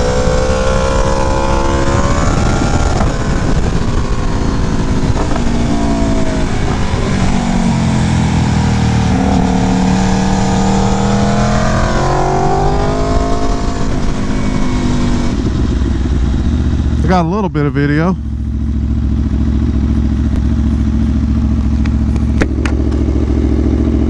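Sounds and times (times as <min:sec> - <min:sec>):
wind noise: 0:00.0 - 0:17.0
motorcycle engine revving: 0:00.0 - 0:24.0.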